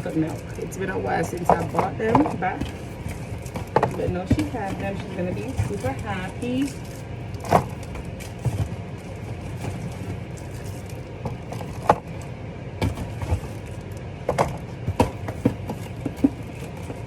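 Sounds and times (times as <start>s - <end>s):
bottles knocking against plastic: 0.0s - 12.1s
steady low hum: 0.0s - 17.0s.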